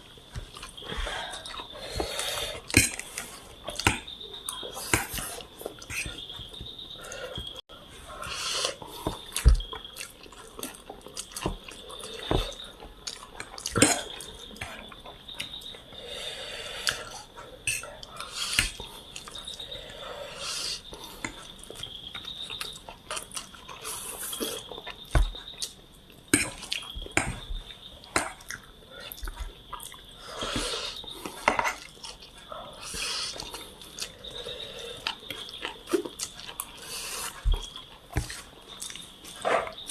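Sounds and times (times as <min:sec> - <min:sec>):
wet chewing: 0:31.0 - 0:39.9.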